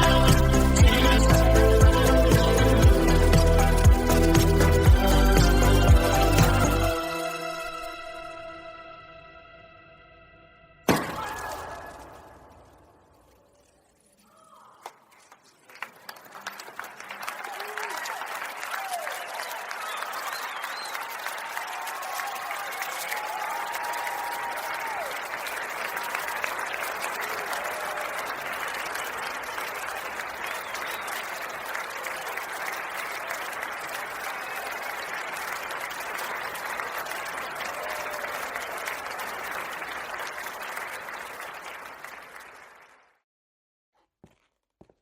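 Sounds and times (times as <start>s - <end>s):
crowd applauding: 0.0s - 8.0s, 14.8s - 43.2s.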